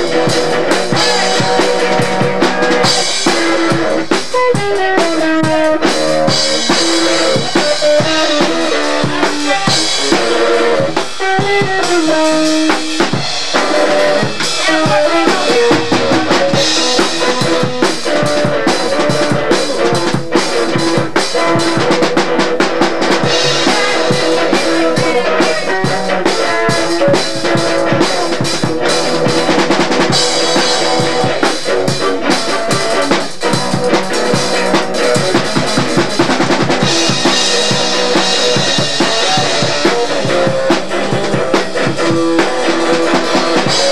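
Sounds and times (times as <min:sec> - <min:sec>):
drum kit playing: 0:00.0 - 0:43.9
bending melodic instrument: 0:07.4 - 0:17.9.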